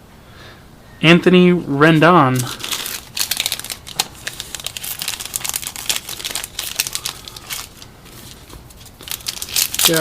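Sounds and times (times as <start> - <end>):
foil wrapper crinkling: 2.3 - 10.0.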